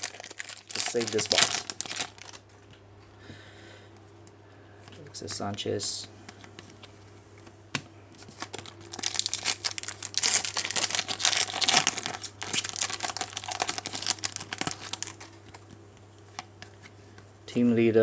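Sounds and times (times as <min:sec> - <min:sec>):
card pack wrapper crinkling: 0:00.0 - 0:02.5, 0:08.2 - 0:16.9.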